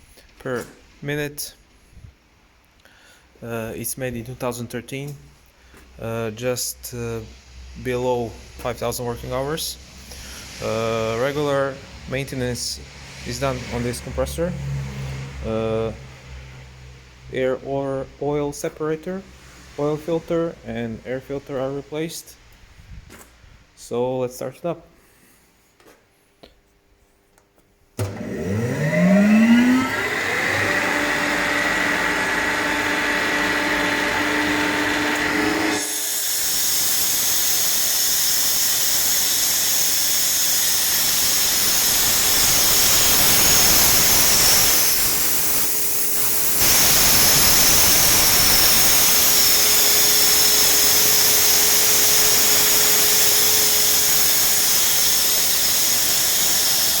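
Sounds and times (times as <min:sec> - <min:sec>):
rushing air hiss: 0:06.9 - 0:15.9, 0:35.8 - 0:57.0
air compressor motor whine: 0:28.0 - 0:57.0.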